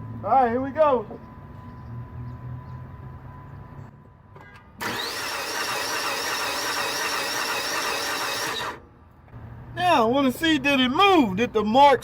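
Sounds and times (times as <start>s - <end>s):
starter cranking engine: 4.8s - 8.9s.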